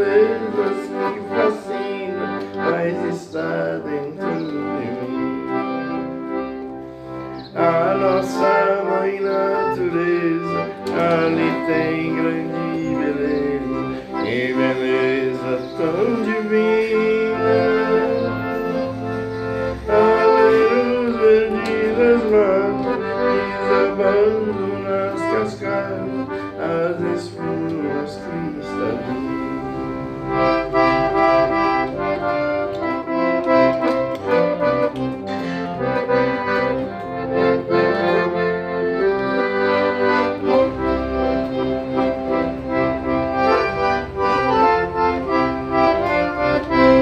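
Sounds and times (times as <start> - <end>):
accordion melody: 0.0 - 47.0
backing band playing: 0.0 - 47.0.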